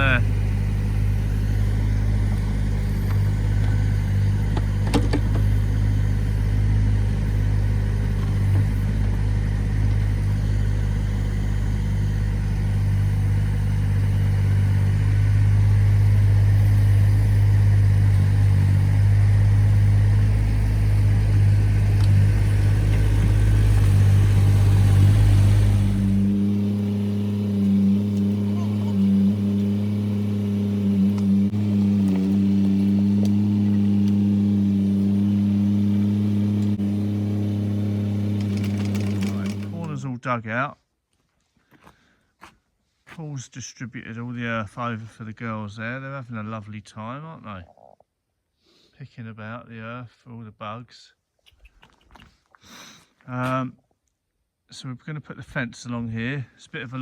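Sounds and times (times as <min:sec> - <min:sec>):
digger bucket clanking: 0:00.0 - 0:14.8, 0:15.4 - 0:40.0
small digger engine running: 0:00.0 - 0:40.0.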